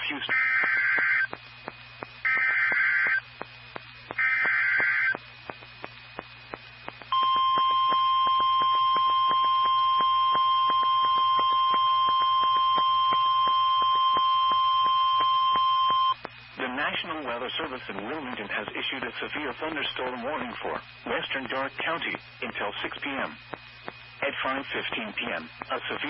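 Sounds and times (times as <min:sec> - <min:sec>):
steady warning alarm tone: 0:00.3 - 0:01.4, 0:02.2 - 0:03.2, 0:04.1 - 0:05.2, 0:07.1 - 0:16.2.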